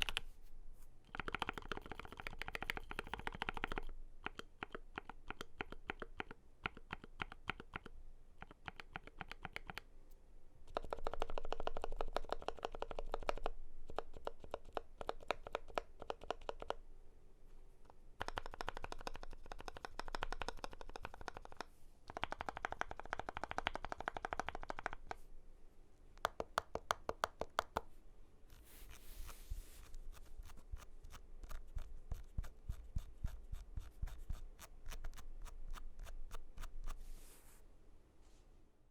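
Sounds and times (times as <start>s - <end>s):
mechanical keyboard typing: 0.0s - 0.3s, 1.1s - 9.8s, 10.7s - 16.8s, 18.2s - 25.2s.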